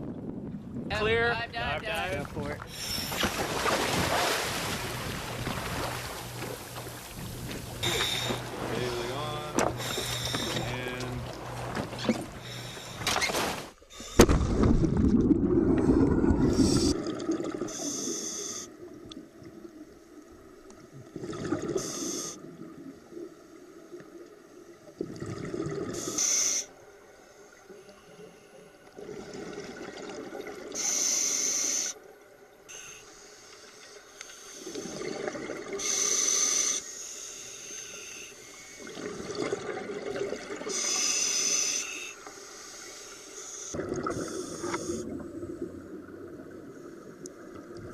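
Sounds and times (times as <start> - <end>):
low rush of water: 1.2 - 13.1
regulator hissing inhale: 2.7 - 3.2, 7.8 - 8.5, 9.8 - 10.7, 12.4 - 13.1, 17.7 - 18.8, 21.8 - 22.4, 26.0 - 28.6, 30.7 - 32.0, 32.7 - 34.9, 35.8 - 38.9, 40.7 - 45.1
bubbling exhale: 4.4 - 10.7, 13.9 - 18.8, 21.0 - 22.5, 43.7 - 46.0.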